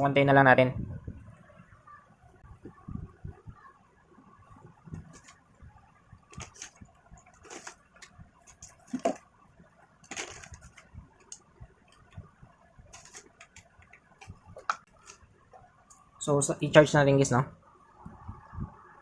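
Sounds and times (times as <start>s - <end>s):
handling rustles: 6.3s - 9.3s, 10.0s - 11.3s, 12.9s - 15.3s.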